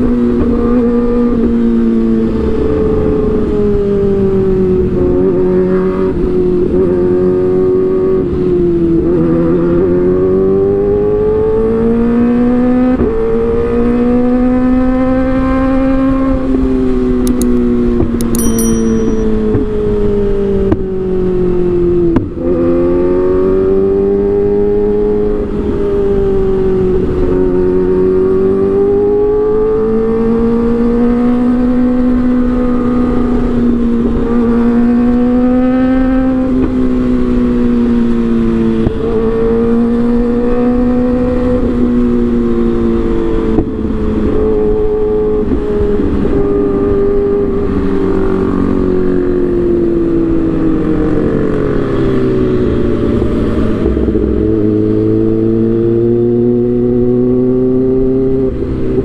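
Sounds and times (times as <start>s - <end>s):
motorcycle engine revving high: 46.7s - 58.9s.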